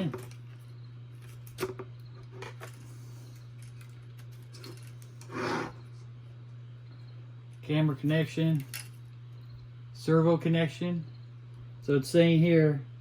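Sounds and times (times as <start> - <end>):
steady low hum: 0.0 - 13.0
plastic scraping rub: 5.2 - 5.9.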